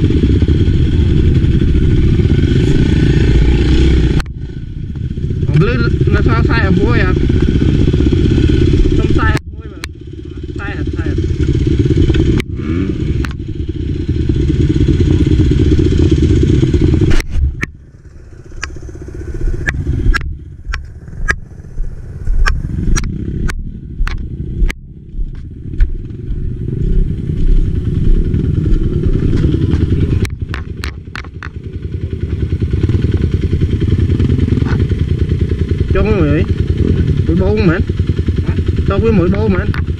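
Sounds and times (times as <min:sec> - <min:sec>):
motorcycle engine running: 0:00.0 - 0:39.9
sharp knocks and rattles: 0:18.5 - 0:35.8.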